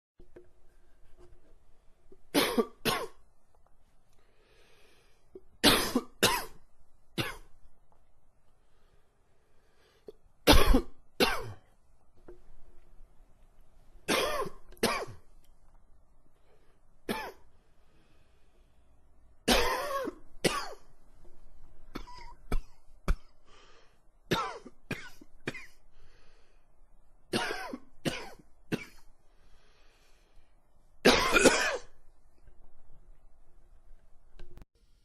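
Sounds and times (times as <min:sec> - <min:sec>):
man coughing: 0:02.4 - 0:03.2, 0:19.5 - 0:20.8, 0:31.1 - 0:31.9
faint breaths: 0:04.1 - 0:05.6, 0:08.5 - 0:10.3, 0:16.3 - 0:19.2, 0:23.4 - 0:24.2, 0:25.8 - 0:26.9, 0:29.2 - 0:30.8.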